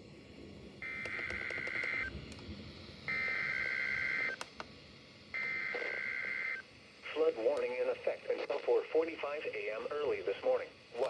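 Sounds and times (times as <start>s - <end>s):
two-tone digital data bursts: 3.1s - 4.4s, 5.4s - 6.6s.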